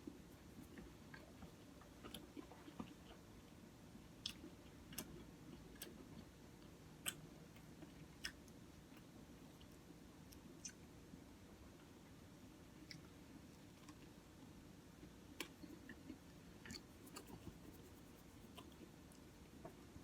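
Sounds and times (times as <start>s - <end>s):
person chewing: 15.4s - 18.8s.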